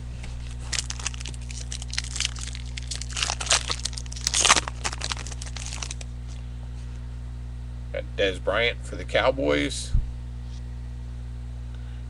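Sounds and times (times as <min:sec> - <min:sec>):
low electrical hum: 0:00.0 - 0:12.0
plastic packaging crinkling: 0:00.3 - 0:06.4.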